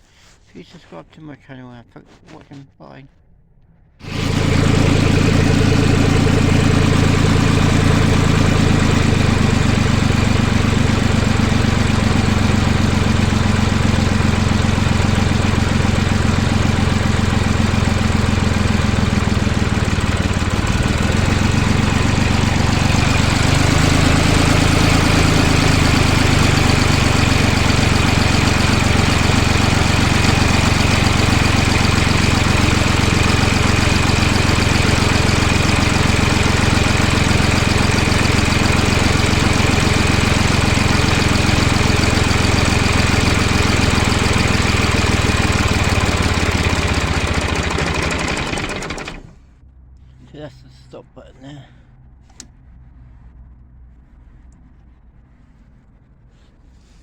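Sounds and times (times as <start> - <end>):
tractor engine idling: 4.0 - 49.5.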